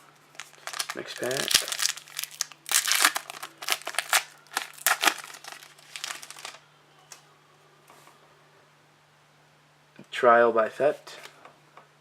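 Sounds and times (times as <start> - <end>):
card pack wrapper tearing and crinkling: 0.3 - 6.6.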